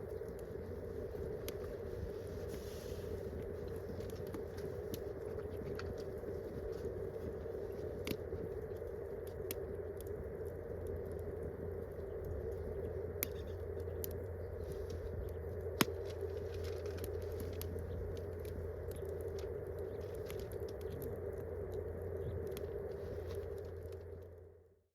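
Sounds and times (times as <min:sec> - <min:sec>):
campfire crackling and popping: 0:00.0 - 0:24.6.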